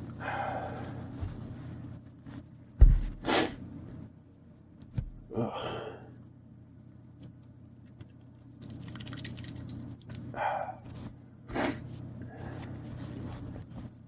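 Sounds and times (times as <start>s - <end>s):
steady low hum: 0.0s - 14.0s
man breathing noisily: 0.2s - 1.2s
man gasping: 5.3s - 6.2s.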